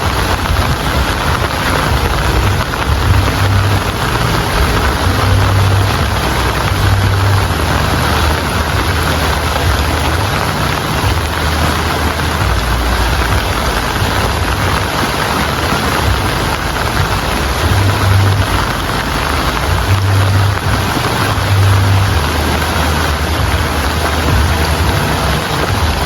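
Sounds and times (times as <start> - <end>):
heavy rain: 0.0 - 26.0
low rumble: 0.0 - 26.0.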